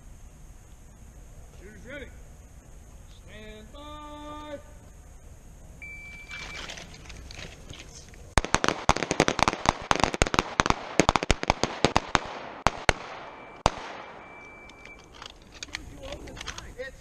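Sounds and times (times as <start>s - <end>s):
pistols firing rapidly: 8.4s - 14.3s.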